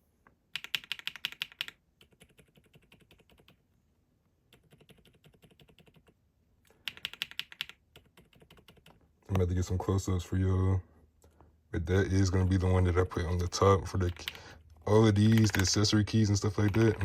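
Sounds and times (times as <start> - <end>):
mechanical keyboard clacking: 0.5 - 3.6, 4.5 - 6.1, 6.9 - 9.0, 13.9 - 14.4, 15.1 - 17.0.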